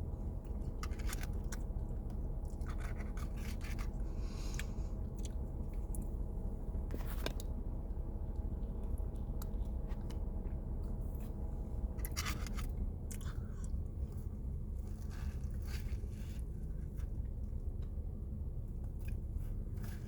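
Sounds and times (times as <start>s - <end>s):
steady low hum: 0.0s - 20.0s
person chewing food: 0.4s - 6.2s.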